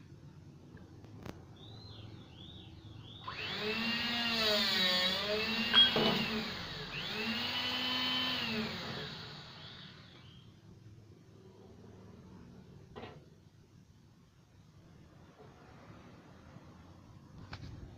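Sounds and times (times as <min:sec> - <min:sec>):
cutter motor running: 0:03.2 - 0:10.1.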